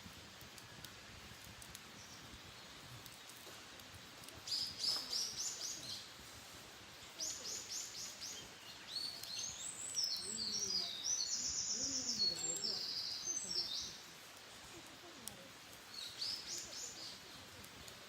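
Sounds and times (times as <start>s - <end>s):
wild birds singing: 2.0s - 3.4s, 4.4s - 6.2s, 6.8s - 14.3s, 15.3s - 17.6s.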